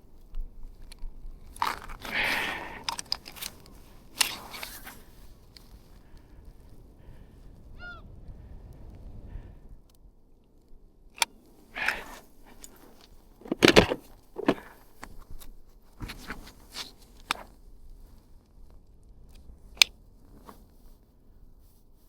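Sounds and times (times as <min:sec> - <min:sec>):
handling rustles and scrapes: 0:00.8 - 0:05.9, 0:11.8 - 0:18.3, 0:20.2 - 0:22.0
handling clicks: 0:01.0 - 0:04.9, 0:11.2 - 0:14.8.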